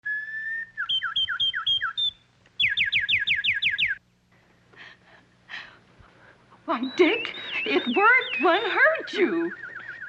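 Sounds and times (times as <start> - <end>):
bird trill: 0.0 - 4.0, 6.7 - 10.0
whistled bird calls: 0.0 - 4.0, 6.7 - 10.0.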